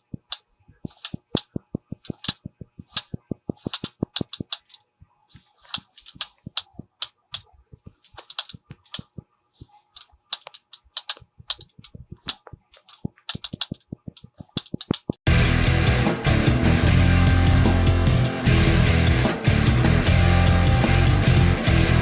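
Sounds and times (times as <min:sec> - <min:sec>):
fingers tapping on hard objects: 0:00.0 - 0:04.8, 0:10.0 - 0:15.2
short scratchy rubs: 0:00.0 - 0:15.2.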